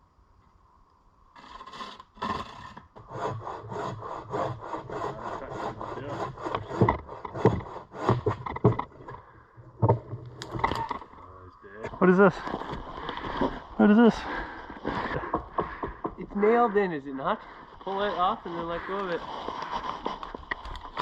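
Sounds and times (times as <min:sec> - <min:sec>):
hand saw cutting wood: 0:01.4 - 0:09.0.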